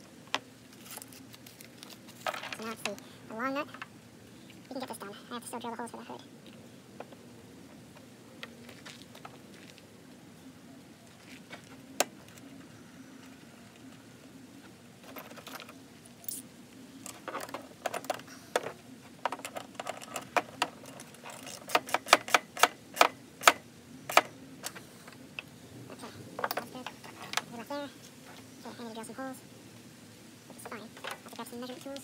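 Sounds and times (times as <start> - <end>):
small metal parts clinking: 15.0 - 16.4, 19.3 - 22.7.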